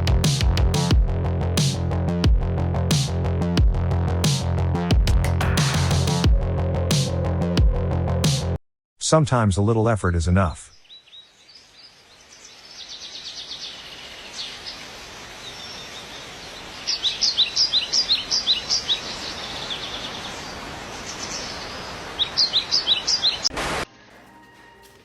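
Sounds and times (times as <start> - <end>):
small bird chirping: 10.8 - 23.5.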